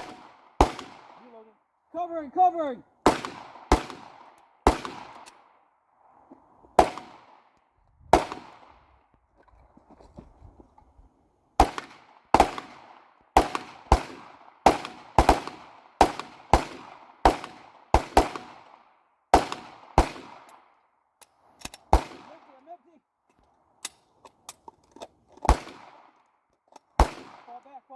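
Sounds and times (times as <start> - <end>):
gunshots with echo: 0.0 - 1.5, 3.0 - 5.3, 6.8 - 7.4, 8.1 - 8.8, 11.6 - 18.7.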